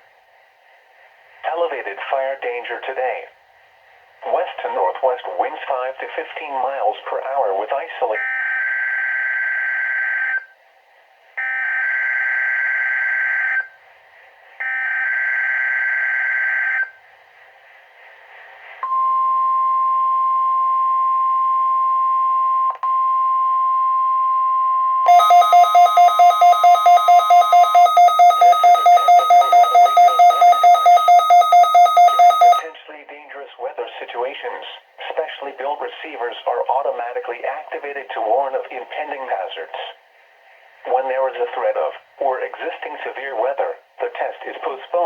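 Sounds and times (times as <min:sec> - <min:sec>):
rapidly pulsing electronic beep: 0:25.1 - 0:32.7
steady warning alarm tone: 0:25.1 - 0:32.7
warbling digital header tones: 0:25.1 - 0:32.7.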